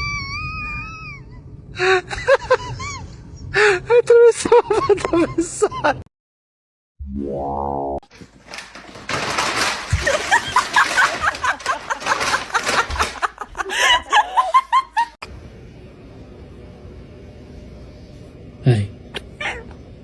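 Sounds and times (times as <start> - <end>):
people laughing hard: 9.9 - 15.2.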